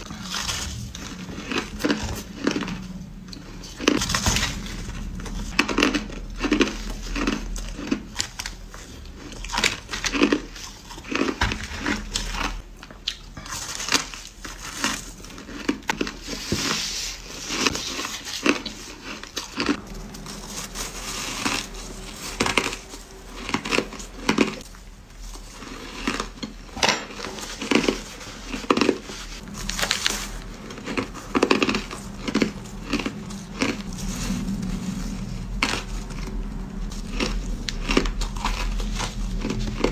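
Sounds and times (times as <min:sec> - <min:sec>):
person crunching ice: 0:27.2 - 0:33.9.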